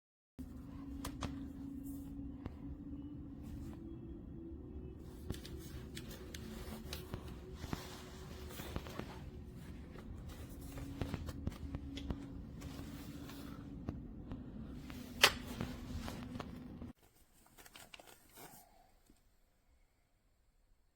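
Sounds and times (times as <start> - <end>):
steady low hum: 0.4 - 17.0
light clicks and handling noise: 5.0 - 19.3.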